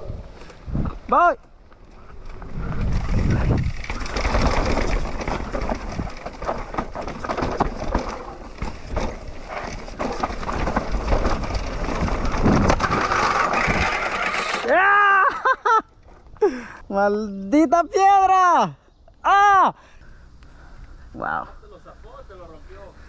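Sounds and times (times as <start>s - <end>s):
wind rumble on microphone: 0.0s - 1.1s, 1.9s - 14.0s
bike clicks and rattles: 0.4s - 14.9s
tyres rolling over dirt and rock: 1.6s - 16.4s.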